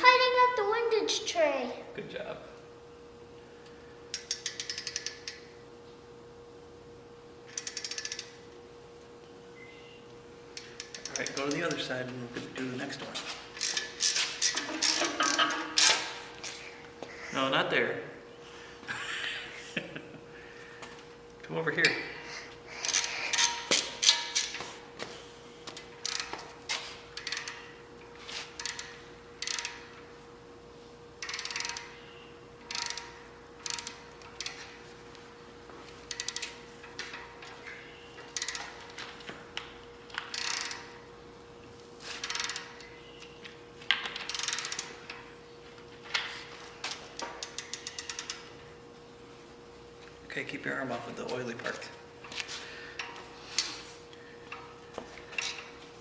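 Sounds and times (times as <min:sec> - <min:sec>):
ratchet wrench clicking: 0:04.1 - 0:05.5, 0:07.5 - 0:08.4, 0:10.6 - 0:11.8, 0:13.6 - 0:16.0, 0:22.8 - 0:24.6, 0:26.0 - 0:26.4, 0:27.2 - 0:27.7, 0:28.6 - 0:29.9, 0:31.2 - 0:32.0, 0:32.6 - 0:34.7, 0:36.1 - 0:37.2, 0:38.4 - 0:38.8, 0:40.2 - 0:41.0, 0:42.2 - 0:42.8, 0:44.2 - 0:44.9, 0:47.4 - 0:48.4.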